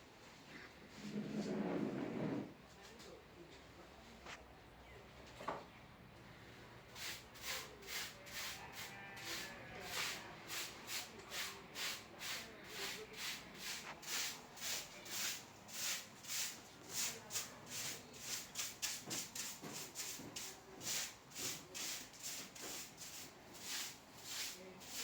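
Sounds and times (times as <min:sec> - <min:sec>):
broom sweeping a floor: 0:06.9 - 0:25.0.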